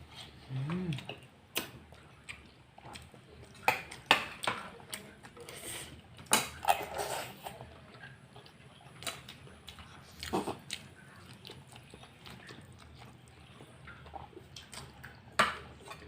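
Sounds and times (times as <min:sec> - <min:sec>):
person chewing with wet smacks: 0:00.6 - 0:06.6, 0:07.5 - 0:16.0.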